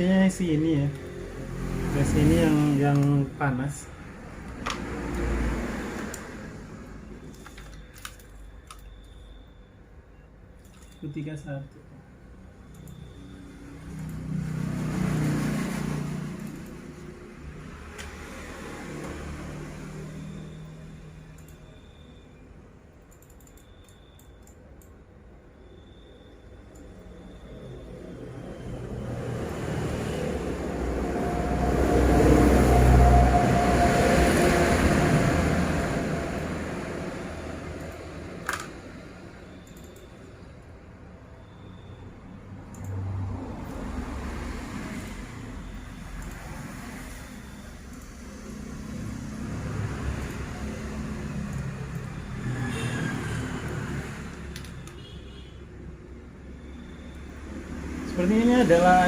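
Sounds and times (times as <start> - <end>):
vehicle passing by: 0.0 - 7.3, 13.1 - 21.3, 27.5 - 39.4, 42.8 - 54.9, 56.0 - 59.0.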